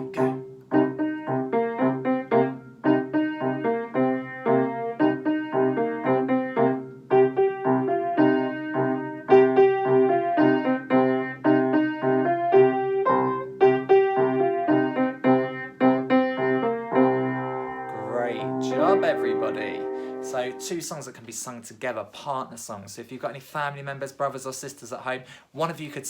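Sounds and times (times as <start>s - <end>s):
piano playing melody over chords: 0.0s - 20.7s.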